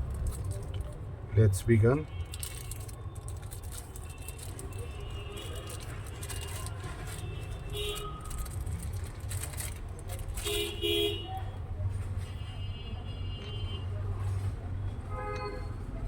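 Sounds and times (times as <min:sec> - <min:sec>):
street traffic rumble: 0:00.0 - 0:16.0
car horn toot: 0:07.2 - 0:08.4, 0:10.4 - 0:11.4.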